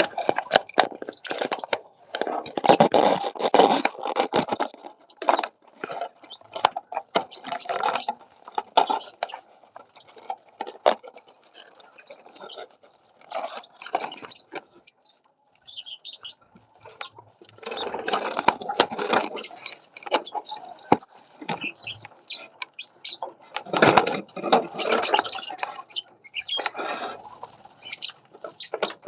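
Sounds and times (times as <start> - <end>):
birds chirping and squeaking: 1.1 - 1.8, 7.2 - 8.2, 8.8 - 10.2, 11.2 - 29.0.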